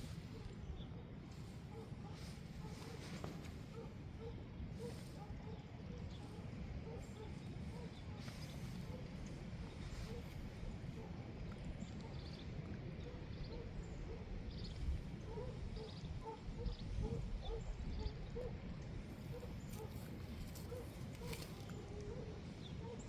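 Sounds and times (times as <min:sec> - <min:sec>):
distant dogs barking: 0:00.1 - 0:12.3, 0:13.0 - 0:14.6, 0:15.2 - 0:23.0.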